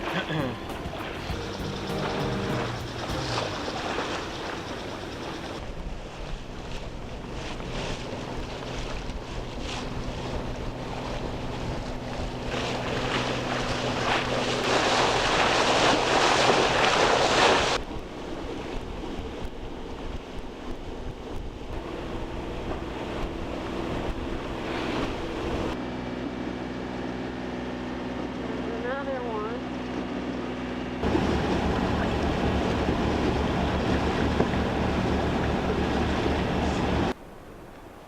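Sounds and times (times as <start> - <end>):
steady low hum: 0.0 - 37.4
water rushing along hull: 0.0 - 38.0.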